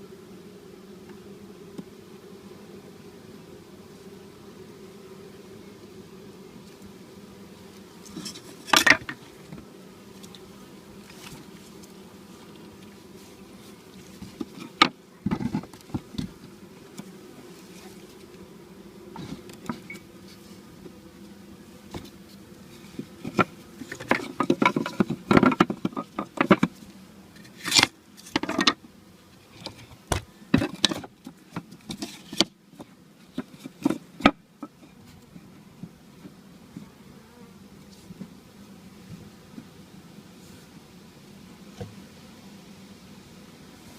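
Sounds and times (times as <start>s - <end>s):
honeybees buzzing: 0.0s - 43.9s
knocks and rustles: 8.1s - 9.7s, 14.1s - 17.1s, 21.9s - 28.8s, 29.5s - 36.9s.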